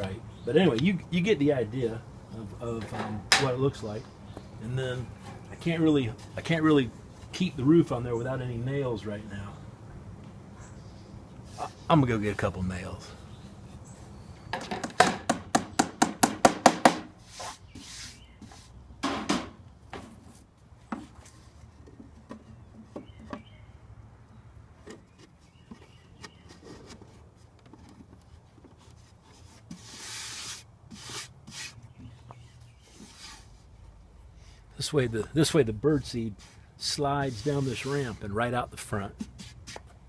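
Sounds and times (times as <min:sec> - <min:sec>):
wood rubbing on wood: 0:16.6 - 0:18.7, 0:24.8 - 0:40.0.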